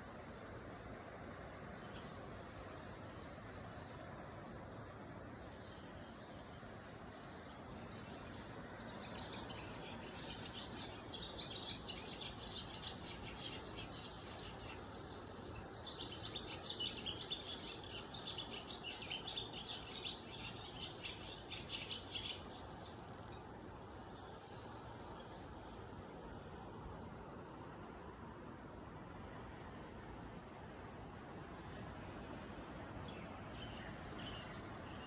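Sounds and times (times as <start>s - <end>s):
small birds chirping: 8.0s - 23.4s.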